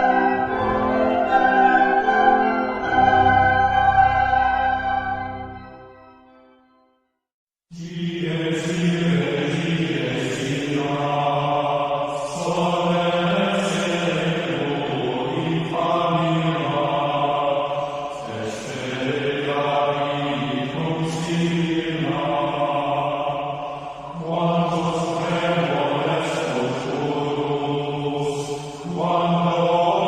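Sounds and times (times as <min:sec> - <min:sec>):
voices chanting in unison: 0:07.7 - 0:30.0.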